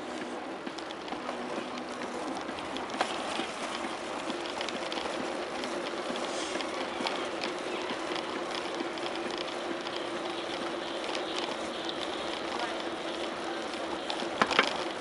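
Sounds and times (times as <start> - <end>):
bicycle tyres rolling on pavement: 0.0 - 15.0
bike rattling: 0.0 - 15.0.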